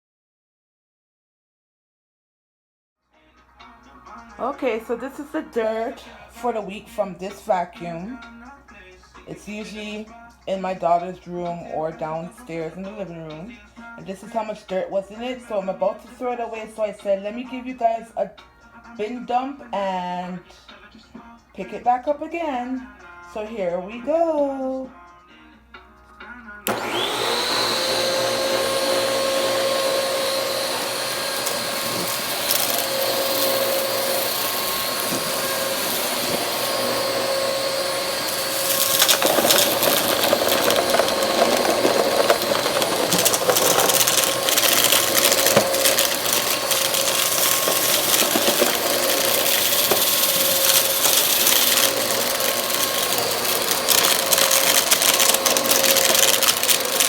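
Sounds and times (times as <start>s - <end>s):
debris rattling in vacuum: 26.7s - 57.0s
vacuum cleaner running: 26.7s - 57.0s.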